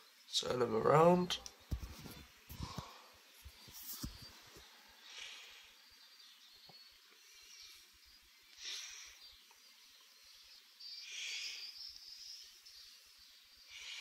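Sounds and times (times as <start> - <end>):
tinny music leaking from earphones: 1.6 - 4.7.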